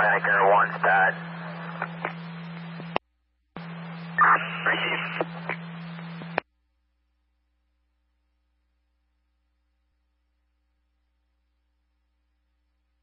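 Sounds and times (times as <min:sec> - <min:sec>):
radio hiss and hum: 0:00.0 - 0:03.0, 0:03.6 - 0:06.4
short radio bursts: 0:04.2 - 0:06.2.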